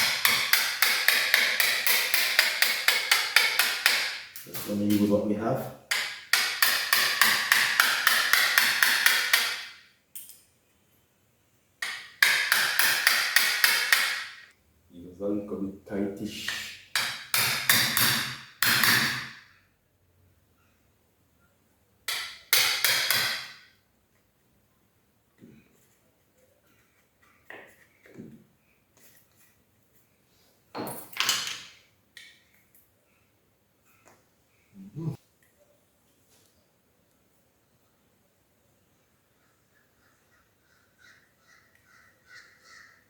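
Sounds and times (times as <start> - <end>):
hammer striking a chisel: 0.0 - 4.3, 5.9 - 9.8, 11.8 - 14.5, 16.5 - 19.4, 22.1 - 23.6.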